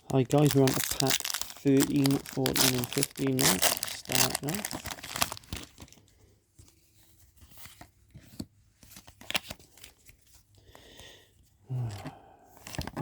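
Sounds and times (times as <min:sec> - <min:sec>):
foil wrapper tearing and crinkling: 0:00.0 - 0:06.0.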